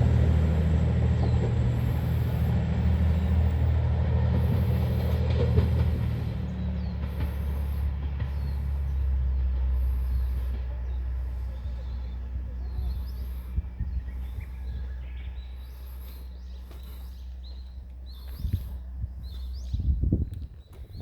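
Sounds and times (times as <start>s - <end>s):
diesel railcar engine rumble: 0.0s - 21.0s.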